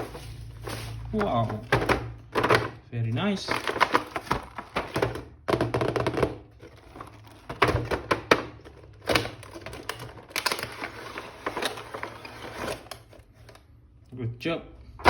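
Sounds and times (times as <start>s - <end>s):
hard plastic clicking and rattling: 3.4s - 10.8s.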